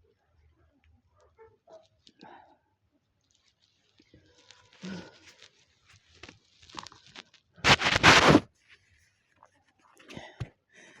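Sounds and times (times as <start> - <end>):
breathing: 10.1 - 11.0.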